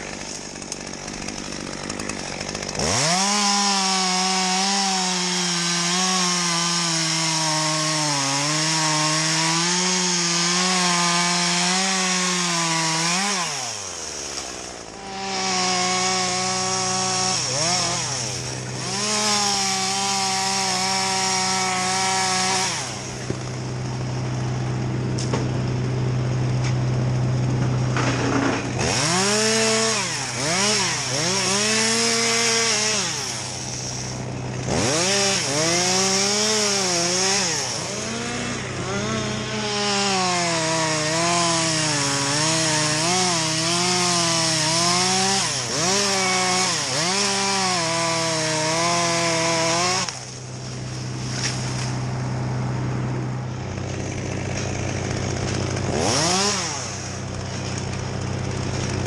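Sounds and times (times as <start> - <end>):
chainsaw revving and cutting: 0.0 - 59.0.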